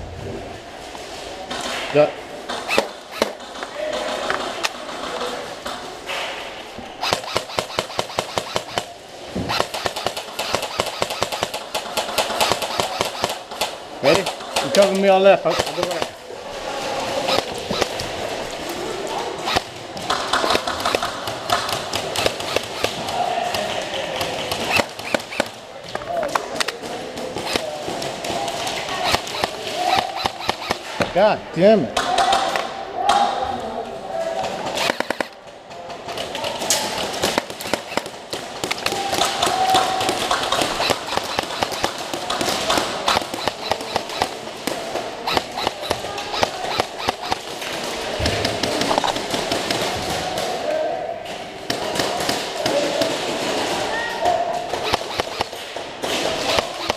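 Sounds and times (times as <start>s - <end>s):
steady background din: 0.0s - 56.9s
airsoft guns firing: 2.5s - 16.2s, 16.8s - 25.7s, 26.3s - 31.2s, 34.4s - 50.8s, 51.4s - 56.9s
bbs striking walls: 7.0s - 16.2s, 19.4s - 25.6s, 26.7s - 31.2s, 35.9s - 50.6s, 54.6s - 56.9s.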